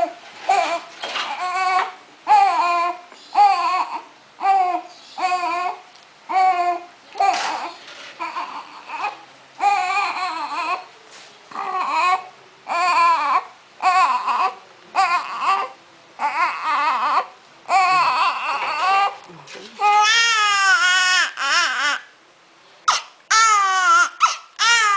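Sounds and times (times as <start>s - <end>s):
newborn baby crying: 0.0s - 10.9s, 11.5s - 22.2s, 22.9s - 24.9s.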